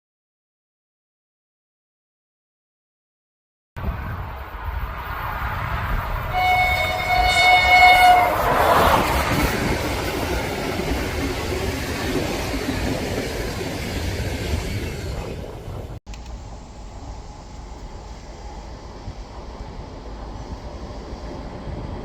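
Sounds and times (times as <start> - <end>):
train horn: 6.2 - 9.0.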